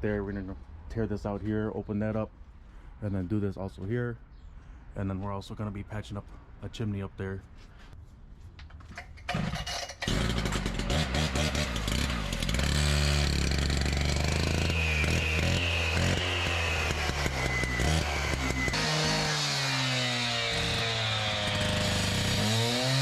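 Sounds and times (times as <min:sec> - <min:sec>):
small engine running: 0:09.3 - 0:23.0.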